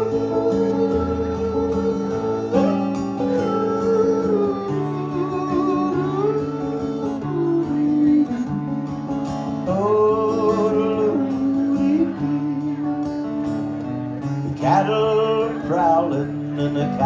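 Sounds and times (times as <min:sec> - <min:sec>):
wavering gliding melody: 0:00.0 - 0:08.4
acoustic guitar chords: 0:00.0 - 0:17.0.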